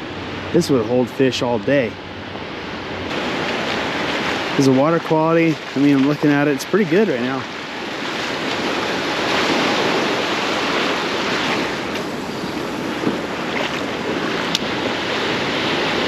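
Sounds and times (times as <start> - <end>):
ocean surf washing on beach: 2.4 - 16.0
wind on microphone: 7.4 - 16.0.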